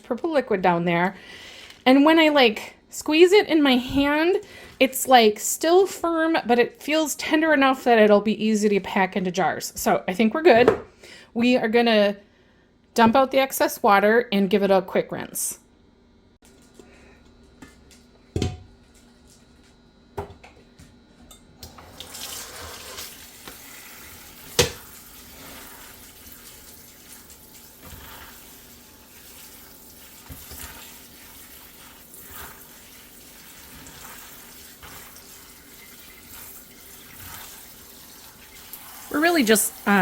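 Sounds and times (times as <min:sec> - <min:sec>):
kitchen tap running: 0:21.6 - 0:40.0.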